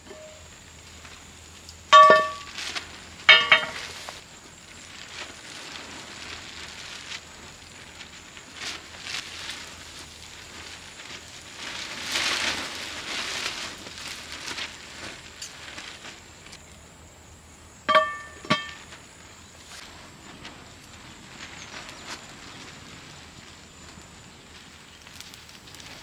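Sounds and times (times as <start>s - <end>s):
metal cookware clinks: 0.0s - 0.4s, 1.9s - 2.6s, 3.3s - 4.0s, 17.9s - 18.9s
campfire crackling and hissing: 0.0s - 26.0s.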